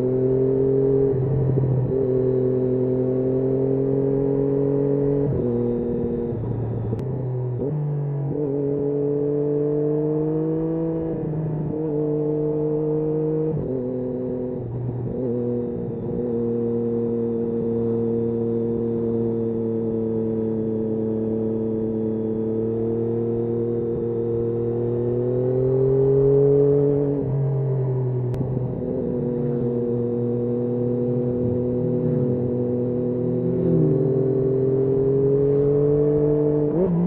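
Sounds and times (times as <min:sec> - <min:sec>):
motorcycle engine running: 0:28.0 - 0:37.0.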